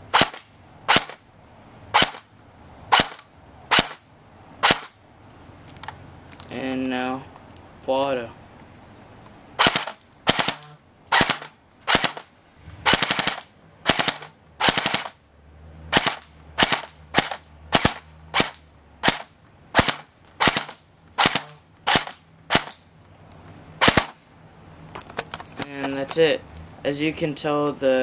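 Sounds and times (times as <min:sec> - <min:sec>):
airsoft gun firing: 0:00.1 - 0:01.2, 0:01.9 - 0:02.3, 0:02.9 - 0:04.0, 0:04.6 - 0:05.0, 0:09.6 - 0:15.2, 0:15.9 - 0:22.8, 0:23.8 - 0:24.2.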